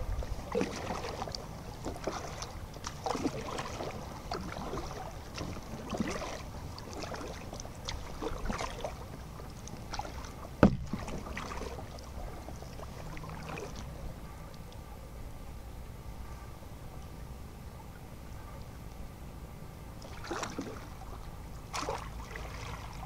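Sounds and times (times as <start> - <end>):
kayak paddle splashing: 0.0 - 14.0, 20.0 - 23.0.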